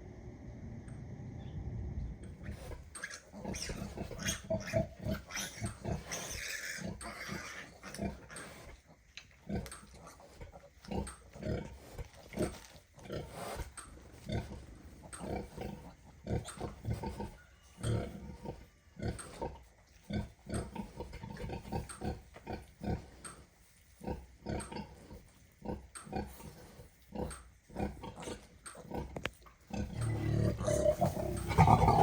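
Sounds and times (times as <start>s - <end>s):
pigs grunting: 2.3s - 32.0s
loud long pig squeal: 2.4s - 8.6s.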